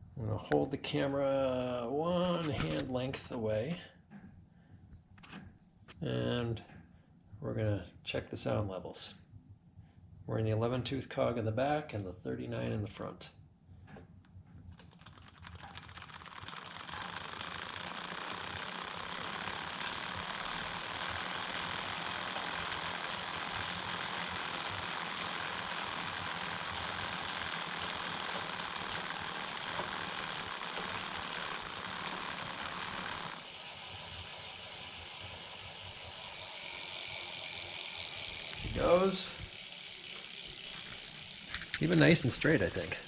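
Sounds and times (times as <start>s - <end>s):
bicycle chain running over cog: 14.8s - 43.0s.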